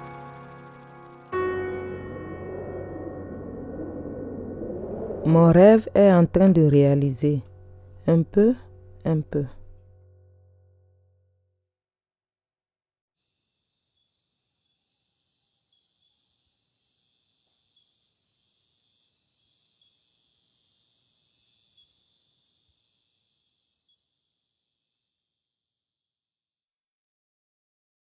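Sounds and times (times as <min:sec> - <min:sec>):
insects chirring: 0:13.2 - 0:26.4.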